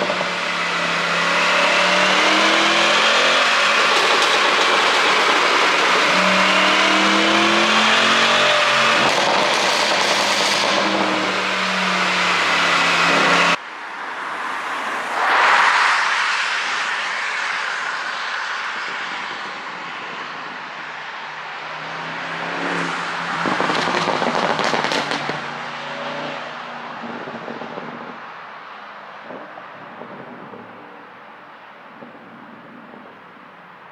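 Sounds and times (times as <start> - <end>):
car exhaust revving: 0.0 - 13.6, 16.0 - 28.3
exhaust crackles and pops: 0.0 - 13.6, 23.1 - 33.9.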